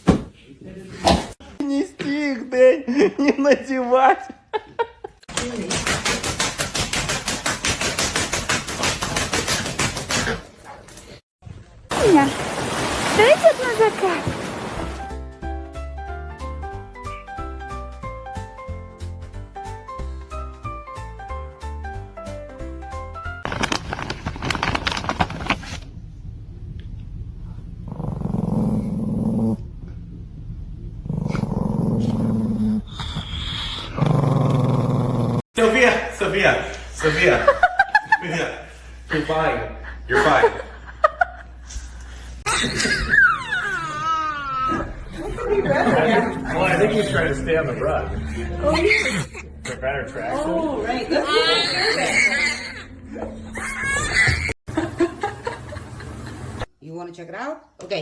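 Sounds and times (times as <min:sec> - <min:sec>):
pet growling: 0:27.8 - 0:29.8, 0:31.0 - 0:35.4.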